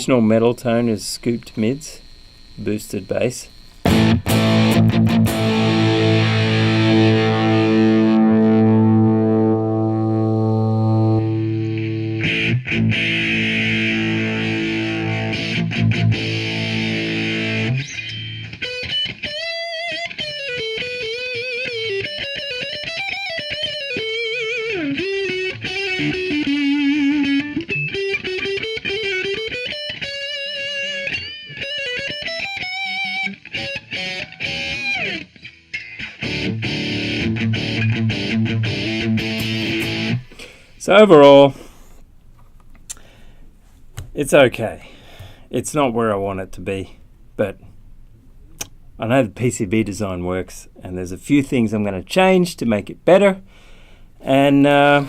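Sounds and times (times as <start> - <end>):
distorted electric guitar chords: 0.0 - 40.8
guitar lead with string bends: 3.8 - 40.7.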